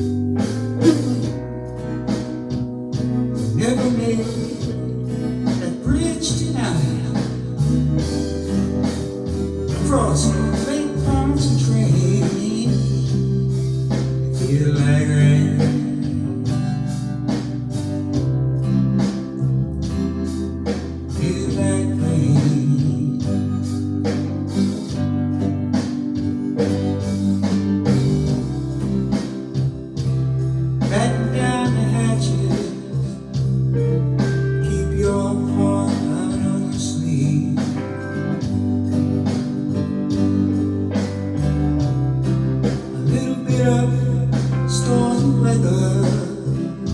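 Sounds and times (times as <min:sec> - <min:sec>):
bass line: 0:00.0 - 0:46.9
blues guitar: 0:00.0 - 0:46.9
drum beat: 0:00.4 - 0:01.5, 0:25.8 - 0:34.5, 0:37.7 - 0:46.9.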